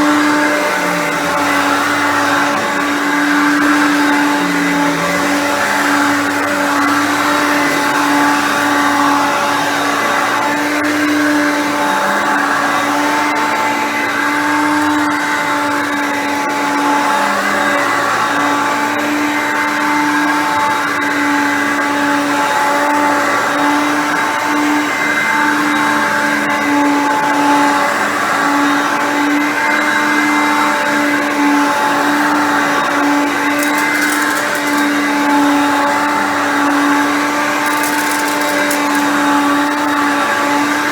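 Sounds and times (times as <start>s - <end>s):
upright vacuum whining: 0.0s - 23.8s, 28.4s - 40.9s.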